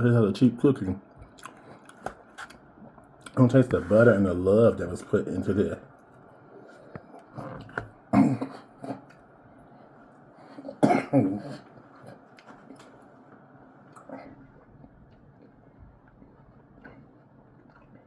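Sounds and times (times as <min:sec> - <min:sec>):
person coughing: 0:08.1 - 0:09.1, 0:10.7 - 0:11.7.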